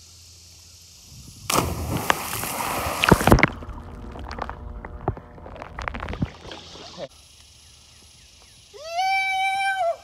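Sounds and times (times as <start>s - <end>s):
sharp cracks: 1.5s - 6.6s
loud splash into water: 1.5s - 6.8s
churning water with pops: 1.5s - 7.0s.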